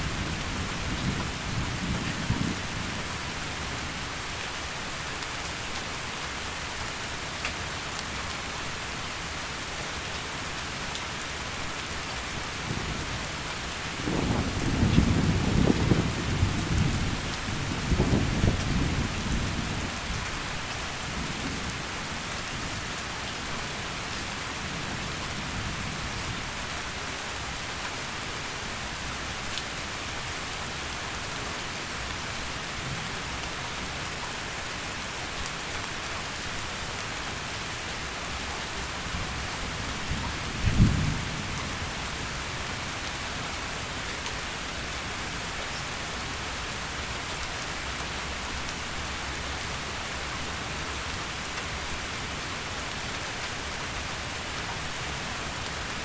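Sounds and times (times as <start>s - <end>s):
thunder rumbling: 14.0s - 19.6s, 40.6s - 41.7s.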